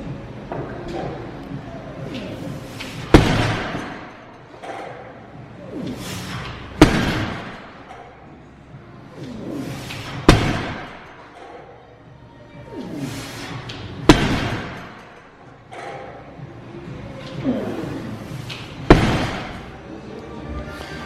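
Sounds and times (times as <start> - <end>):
gym weights slamming on floor: 3.0 - 4.0, 6.8 - 7.7, 10.1 - 11.0, 14.1 - 15.0, 18.8 - 19.6.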